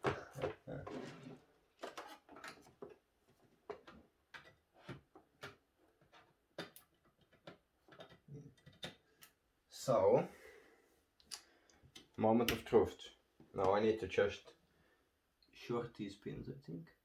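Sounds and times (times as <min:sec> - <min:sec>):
hands handling computer hardware: 0:00.0 - 0:09.4.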